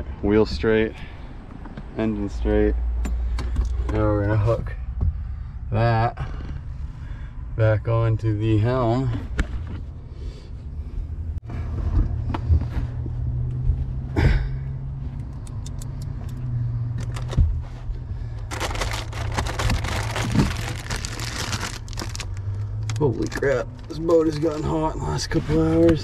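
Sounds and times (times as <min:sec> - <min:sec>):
sharp clicks: 0:15.2 - 0:17.3.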